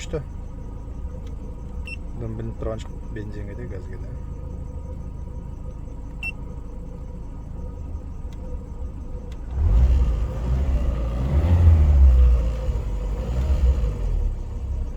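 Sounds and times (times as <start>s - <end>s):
car engine revving: 4.2s - 14.9s.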